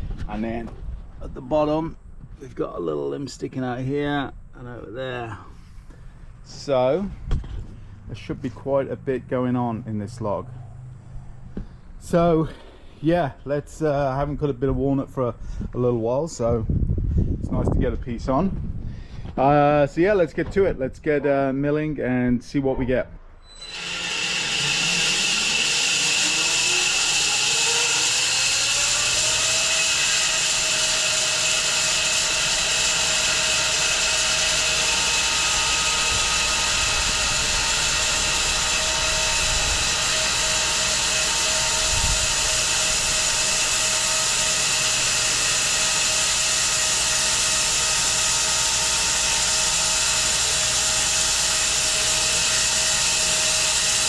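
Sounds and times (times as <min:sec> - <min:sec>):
bandsaw mill whining: 0:23.4 - 0:54.0.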